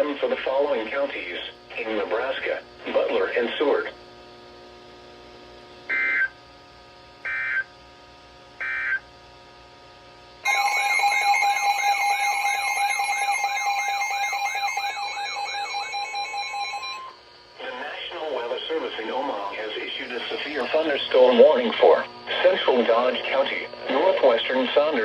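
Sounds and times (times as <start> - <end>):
loud warbling alert alarm: 10.5 - 17.2.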